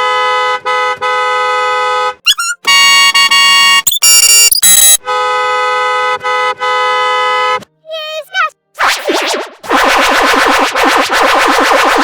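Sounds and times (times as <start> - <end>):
two-note car horn blast: 2.3 - 3.8.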